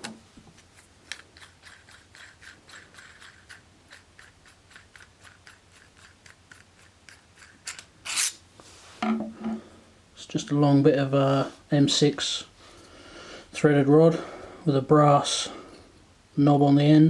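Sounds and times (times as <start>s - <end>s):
metal scrape: 8.1s - 9.1s.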